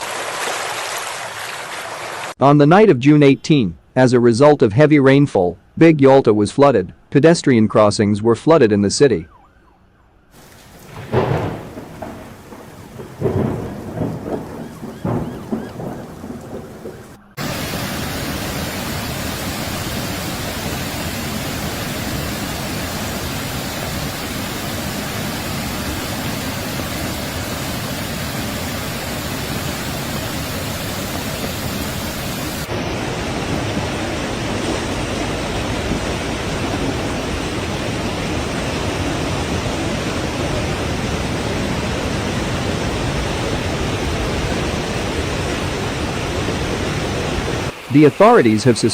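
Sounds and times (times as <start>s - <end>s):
heavy rain downpour: 0.0s - 2.4s, 10.4s - 48.9s
thunder rumbling: 10.4s - 48.9s.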